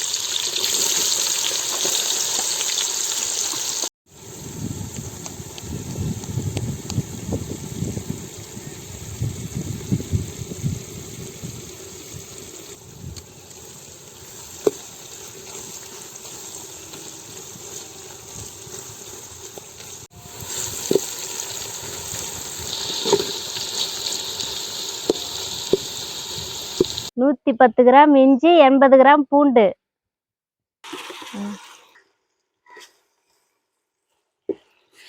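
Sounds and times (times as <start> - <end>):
onions sizzling in hot oil: 0.0 - 27.1.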